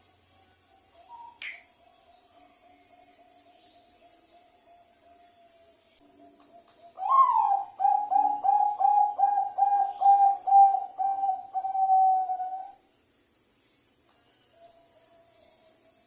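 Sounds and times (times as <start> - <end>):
crickets trilling: 0.0 - 16.0
dove cooing: 6.8 - 12.8.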